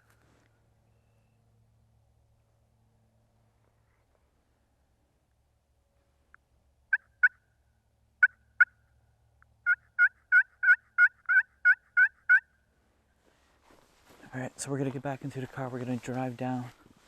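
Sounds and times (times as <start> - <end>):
turkey call hen yelps: 6.9 - 7.4, 9.6 - 12.5.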